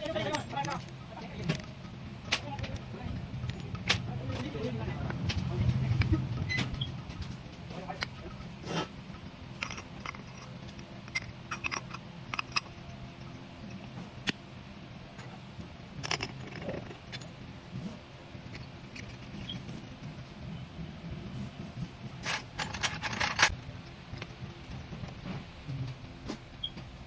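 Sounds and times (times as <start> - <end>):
metal tools clinking: 9.6 - 12.9, 15.2 - 17.3, 18.4 - 20.1, 22.2 - 23.5.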